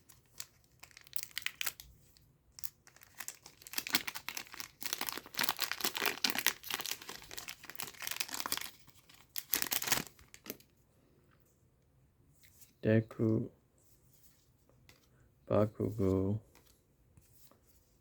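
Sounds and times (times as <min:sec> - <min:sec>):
wrapper tearing and crinkling: 0:00.0 - 0:01.9, 0:02.6 - 0:10.6.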